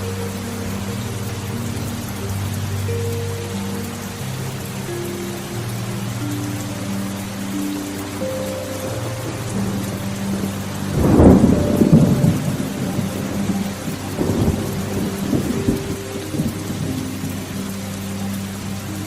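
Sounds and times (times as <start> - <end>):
steady rain: 0.0 - 19.0
thunder rumbling: 9.0 - 17.9.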